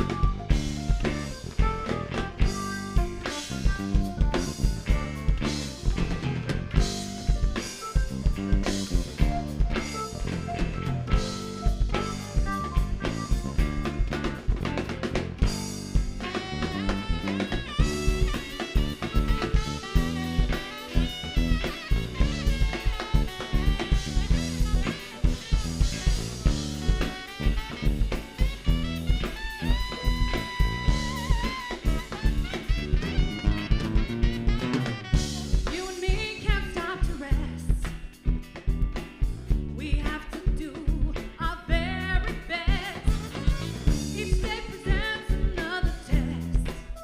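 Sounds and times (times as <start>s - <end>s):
melodic lead line: 0.0s - 36.6s
bass: 0.0s - 47.0s
drum kit beat: 0.0s - 47.0s.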